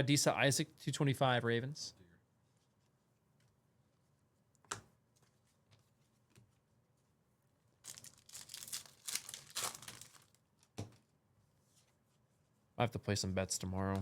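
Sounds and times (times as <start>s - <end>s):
wrapper tearing and crinkling: 7.8s - 10.4s.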